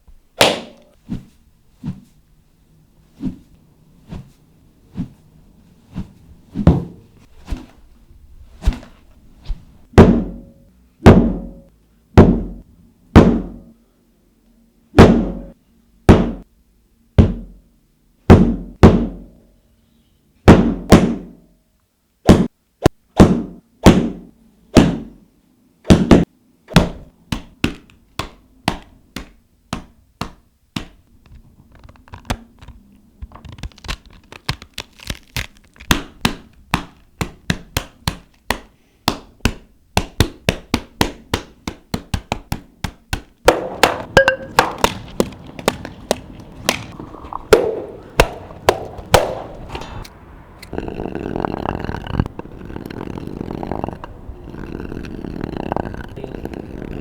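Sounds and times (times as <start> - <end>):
thuds and knocks on something solid: 6.6 - 7.0.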